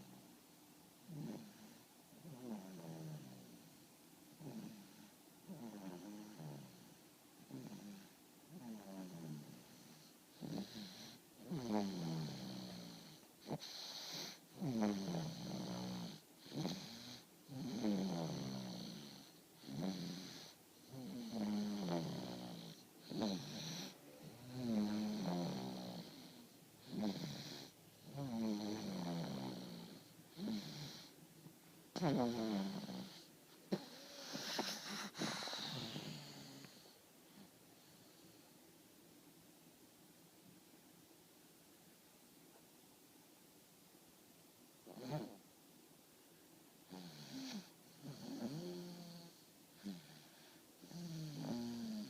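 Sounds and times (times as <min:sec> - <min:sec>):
person snoring: 0:04.4 - 0:06.9, 0:07.5 - 0:31.1, 0:31.9 - 0:37.5, 0:46.9 - 0:52.0.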